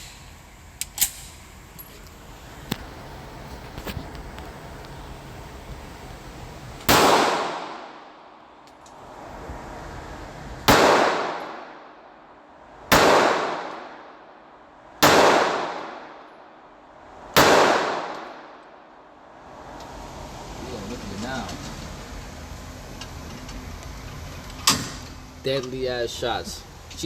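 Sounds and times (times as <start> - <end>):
pistol shots: 6.9 - 8.3, 10.7 - 12.0, 12.9 - 14.4, 15.0 - 16.6, 17.4 - 18.8.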